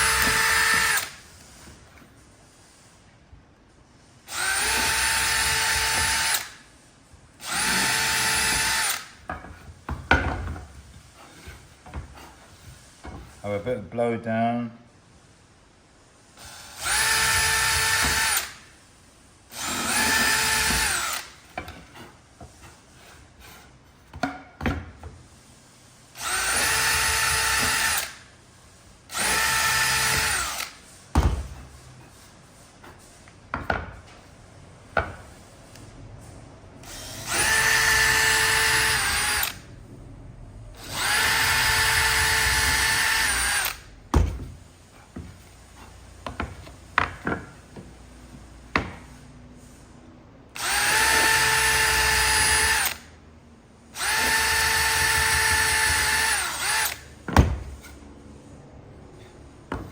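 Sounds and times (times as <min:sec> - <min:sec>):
cordless drill whining: 0:00.0 - 0:01.2, 0:04.3 - 0:06.6, 0:07.4 - 0:09.2, 0:16.4 - 0:18.6, 0:19.5 - 0:21.4, 0:26.2 - 0:28.2, 0:29.1 - 0:30.8, 0:36.8 - 0:39.6, 0:40.8 - 0:43.9, 0:50.6 - 0:53.1, 0:54.0 - 0:57.1.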